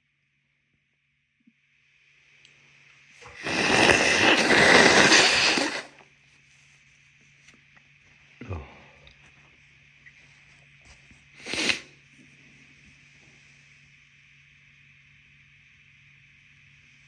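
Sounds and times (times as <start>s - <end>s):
person sneezing: 3.3s - 5.9s, 11.4s - 11.9s
person blowing nose: 3.3s - 6.0s, 11.4s - 12.0s.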